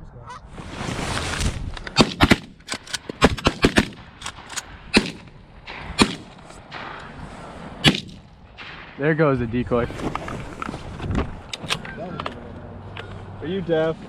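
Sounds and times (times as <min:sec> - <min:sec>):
shotgun shots: 0:02.0 - 0:09.2.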